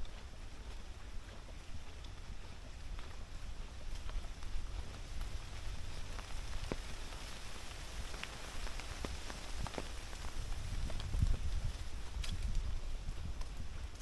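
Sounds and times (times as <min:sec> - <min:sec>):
light clicks and ticks: 0:00.0 - 0:06.9, 0:12.2 - 0:14.0
wind rumbling on microphone: 0:00.0 - 0:14.0.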